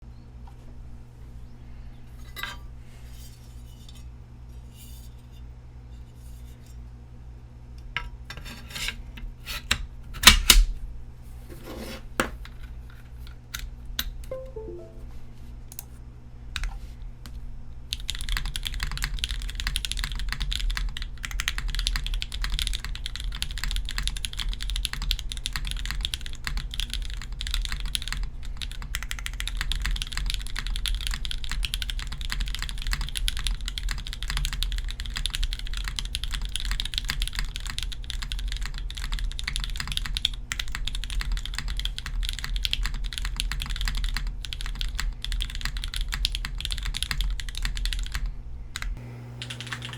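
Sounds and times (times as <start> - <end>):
mechanical keyboard typing: 17.9 - 49.9
low steady hum: 48.3 - 49.9.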